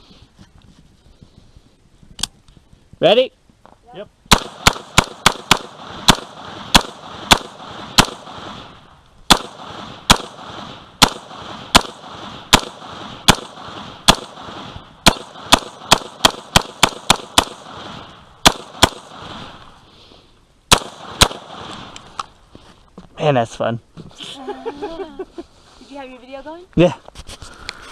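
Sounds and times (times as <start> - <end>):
rifle shots with echo: 4.3 - 19.7, 20.7 - 22.0.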